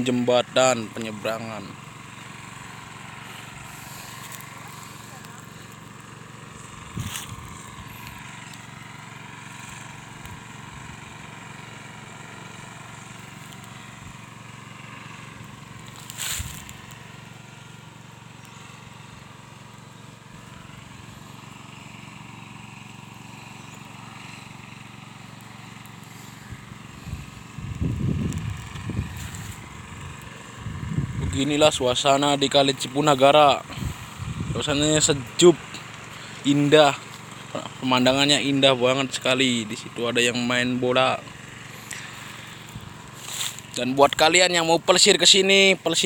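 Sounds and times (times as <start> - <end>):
distant engine hum: 0.0 - 46.0
outdoor ambience: 0.0 - 46.0
low rumbling: 26.2 - 36.3.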